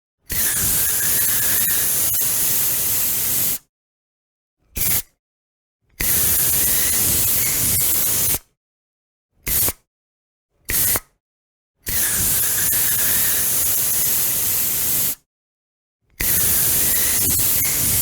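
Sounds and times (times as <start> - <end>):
aerosol spray can hissing: 11.9 - 15.2, 16.2 - 18.0.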